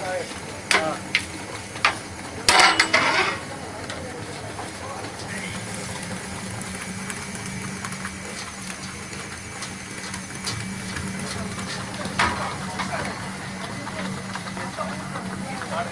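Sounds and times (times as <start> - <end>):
loud kitchenware clatter: 0.0 - 9.2, 9.9 - 15.9
kitchenware clicks and clinks: 1.8 - 4.0.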